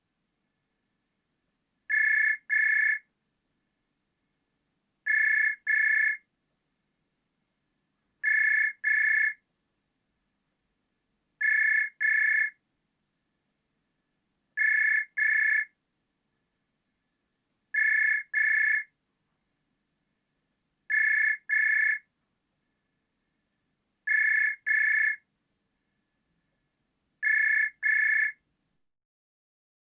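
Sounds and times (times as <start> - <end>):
telephone ringing: 1.9 - 3.0, 5.1 - 6.2, 8.2 - 9.4, 11.4 - 12.5, 14.6 - 15.7, 17.8 - 18.9, 20.9 - 22.0, 24.1 - 25.2, 27.2 - 28.4.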